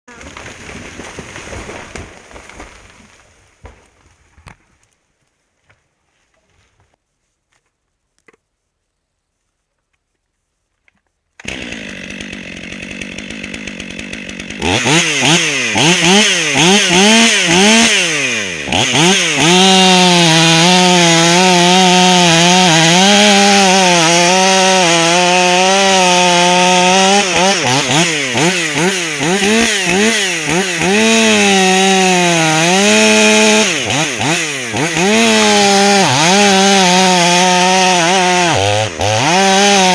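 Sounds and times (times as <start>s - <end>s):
chainsaw cutting wood: 0.1s - 4.6s, 11.4s - 39.9s.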